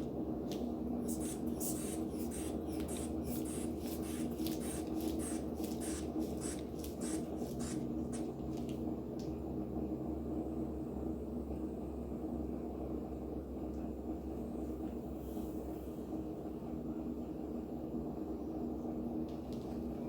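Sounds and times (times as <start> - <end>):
steady electrical hum: 0.0 - 20.0
rubber bulb squeezing puffs: 1.0 - 8.3.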